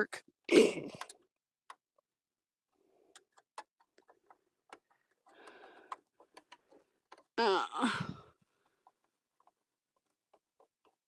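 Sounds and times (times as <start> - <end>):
small clicks and taps of machine parts: 3.0 - 7.3.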